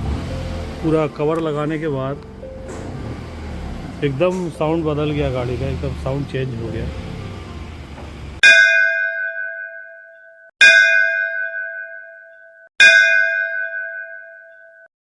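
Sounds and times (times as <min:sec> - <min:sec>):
tubular bell chimes: 0:08.4 - 0:14.9.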